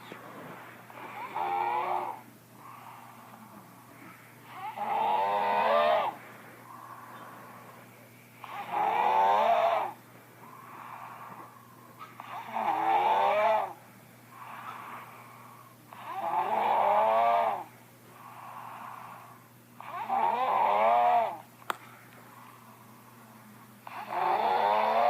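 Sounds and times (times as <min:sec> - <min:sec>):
soft breathing: 0:00.0 - 0:09.0, 0:09.8 - 0:12.6, 0:13.6 - 0:16.2, 0:17.6 - 0:20.0, 0:21.3 - 0:24.3
person snoring loudly: 0:01.0 - 0:03.0, 0:04.5 - 0:06.2, 0:08.4 - 0:10.0, 0:12.2 - 0:13.8, 0:15.9 - 0:17.7, 0:19.8 - 0:21.4, 0:23.8 - 0:25.0.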